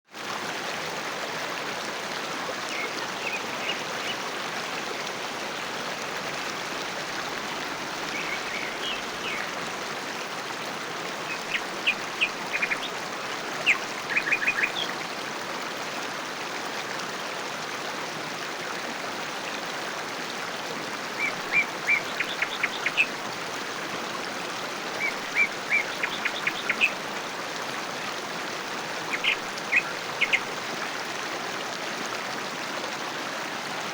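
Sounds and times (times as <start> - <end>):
river flowing over stones: 0.1 - 33.9
birds chirping: 8.0 - 9.5, 25.0 - 27.0, 29.1 - 30.5.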